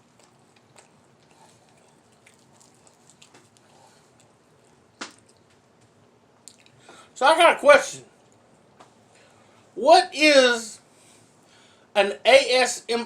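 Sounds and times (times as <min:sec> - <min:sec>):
quiet chewing: 0:00.0 - 0:07.0, 0:08.2 - 0:09.4.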